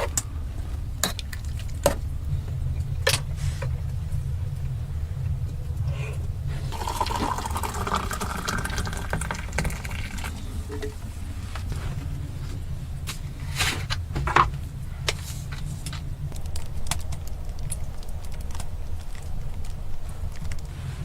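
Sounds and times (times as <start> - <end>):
low rumble: 0.0 - 21.0
liquid sloshing: 6.6 - 11.1.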